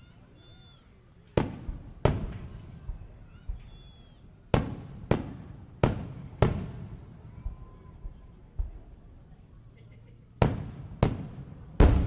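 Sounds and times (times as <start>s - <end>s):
fireworks booming: 1.3s - 3.8s, 4.5s - 8.9s, 10.4s - 12.0s.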